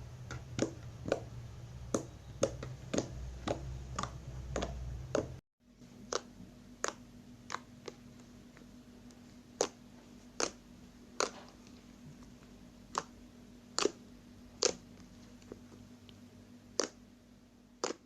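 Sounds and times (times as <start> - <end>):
slime squished with clicking pops: 17.8 - 18.0.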